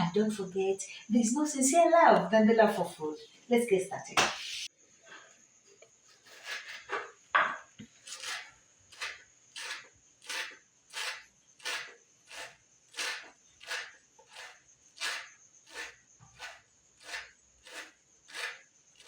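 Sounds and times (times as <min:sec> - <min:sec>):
cricket trilling: 0:00.0 - 0:19.0
short even strokes on wood: 0:08.1 - 0:18.6.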